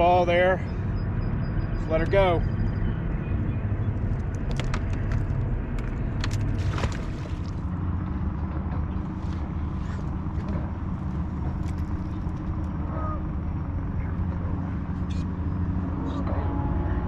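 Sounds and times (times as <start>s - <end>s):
low engine-like rumble: 0.0s - 17.0s.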